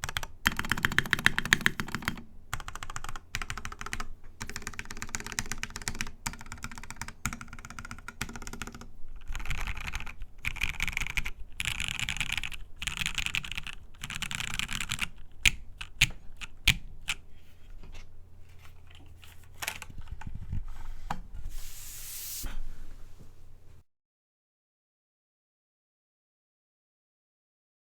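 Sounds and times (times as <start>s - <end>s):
mechanical keyboard typing: 0.0s - 17.2s.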